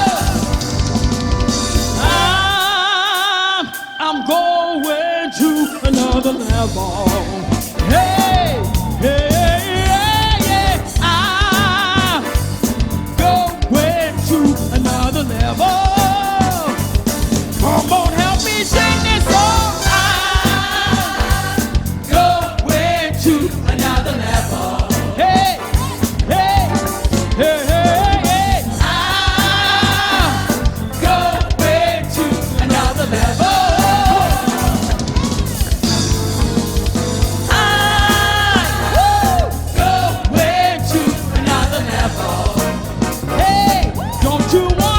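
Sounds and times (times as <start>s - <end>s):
group singing worship song: 0.0s - 44.9s
instrumental accompaniment: 0.0s - 44.9s.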